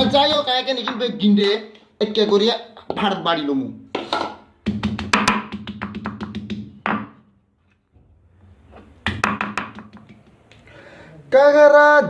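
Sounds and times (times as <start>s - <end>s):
stone pestle pounding on stone: 4.0s - 7.2s, 9.0s - 10.2s.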